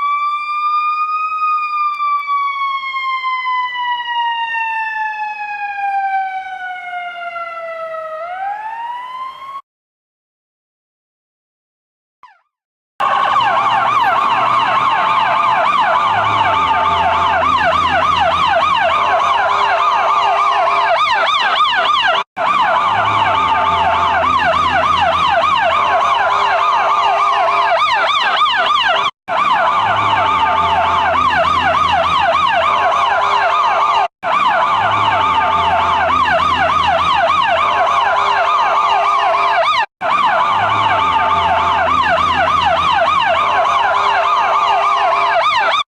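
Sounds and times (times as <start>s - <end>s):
electronic siren yelping: 0.0s - 9.6s, 12.2s - 45.9s
steady horn-like tones: 22.8s - 26.6s, 29.5s - 33.4s, 34.5s - 38.4s, 40.2s - 44.6s.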